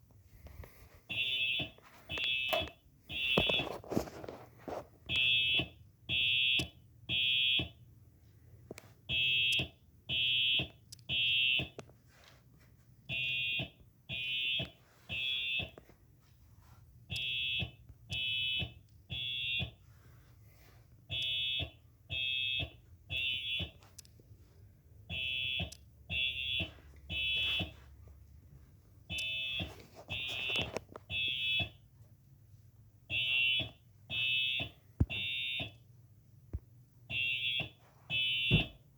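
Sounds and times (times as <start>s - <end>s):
fire alarm horn blasts: 1.1s - 3.9s, 5.1s - 7.7s, 9.1s - 11.8s, 13.1s - 15.8s, 17.1s - 19.8s, 21.1s - 23.8s, 25.1s - 27.8s, 29.1s - 31.8s, 33.1s - 35.8s, 37.1s - 38.8s.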